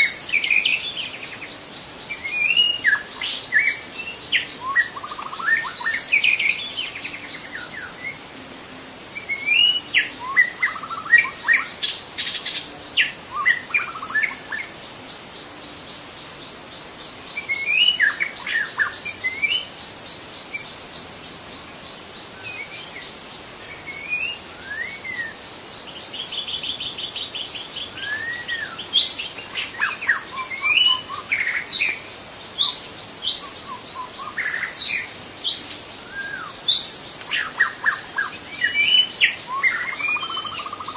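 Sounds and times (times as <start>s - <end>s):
high-pitched insect drone: 0.0s - 40.9s
bird singing whistled phrases: 27.9s - 32.0s.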